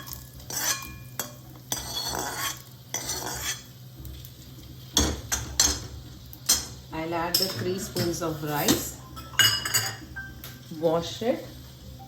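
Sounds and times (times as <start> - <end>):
metal spoon scraping cookware: 0.0 - 3.7.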